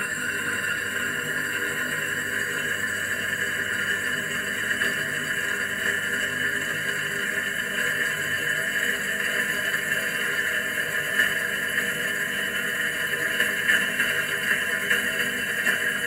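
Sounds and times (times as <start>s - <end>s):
dishwasher running: 0.0s - 9.1s.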